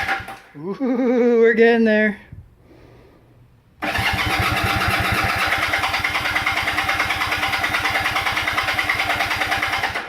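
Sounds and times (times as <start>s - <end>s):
motorcycle engine running: 3.8s - 10.0s.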